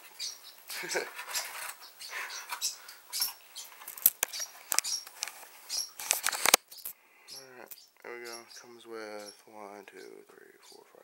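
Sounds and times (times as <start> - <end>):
scratchy plastic rustling: 1.0 - 1.8, 3.8 - 6.7.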